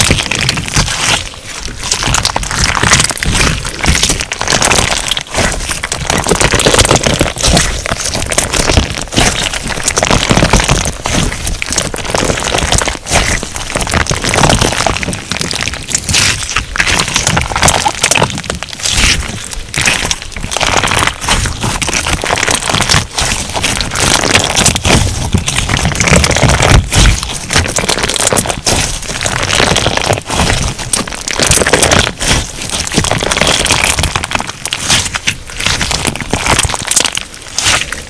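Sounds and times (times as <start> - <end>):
crunch slime crackling: 0.0 - 38.0.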